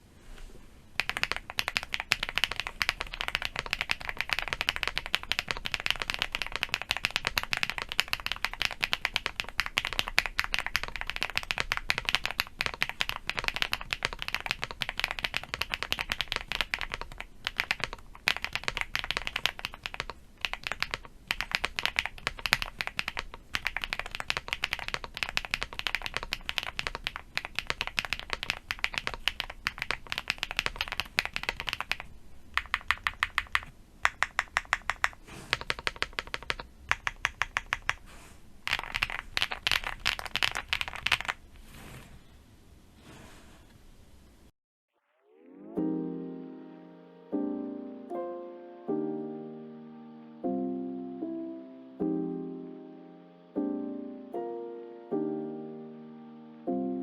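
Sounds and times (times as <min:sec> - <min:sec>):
fast mechanical keyboard typing: 0:01.0 - 0:38.1, 0:38.7 - 0:41.4.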